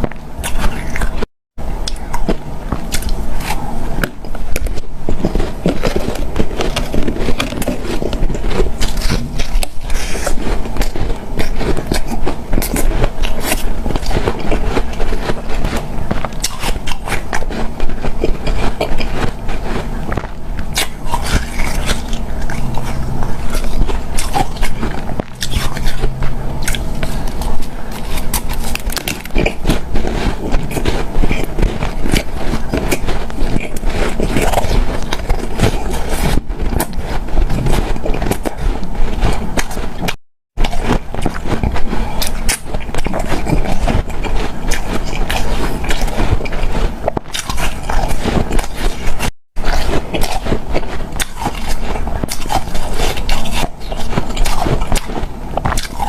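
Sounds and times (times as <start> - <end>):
person crunching ice: 1.9 - 56.0.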